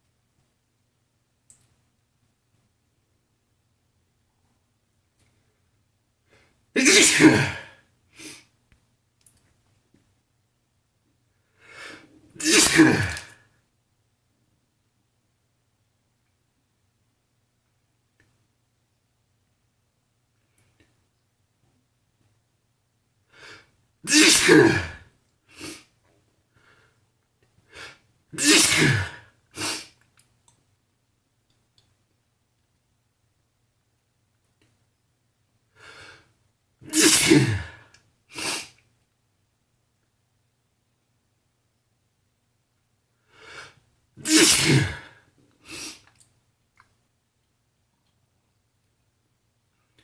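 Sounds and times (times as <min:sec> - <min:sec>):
breathing: 0:06.3 - 0:06.6, 0:11.4 - 0:12.1, 0:23.3 - 0:23.7, 0:26.5 - 0:27.0, 0:35.7 - 0:36.3, 0:43.2 - 0:43.8
man sneezing: 0:06.8 - 0:08.4, 0:12.4 - 0:13.4, 0:24.1 - 0:25.8, 0:27.7 - 0:30.0, 0:36.8 - 0:38.8, 0:44.2 - 0:46.1.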